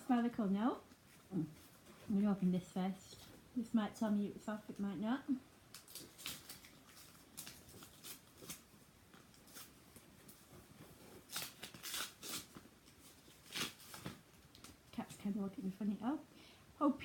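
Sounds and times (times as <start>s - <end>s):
paper rustling and crinkling: 5.7s - 14.8s.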